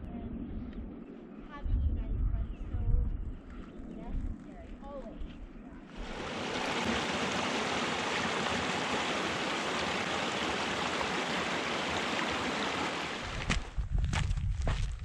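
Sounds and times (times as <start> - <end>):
creek water rushing: 6.0 - 13.7
footsteps crunching on trail: 13.2 - 15.0.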